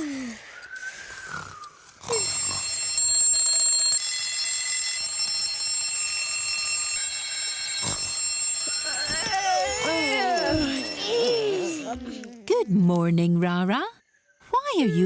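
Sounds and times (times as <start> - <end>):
whistling cartoon snore: 0.0 - 2.7
alarm clocks ringing: 0.0 - 12.0.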